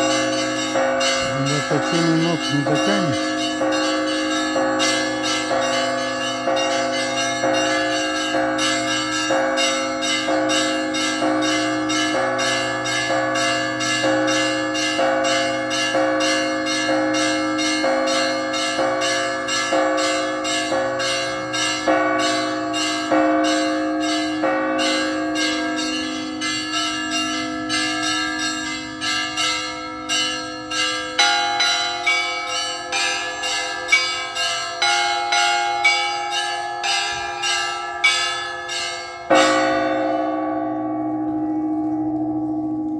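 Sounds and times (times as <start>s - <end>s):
church bells ringing: 0.0s - 42.9s.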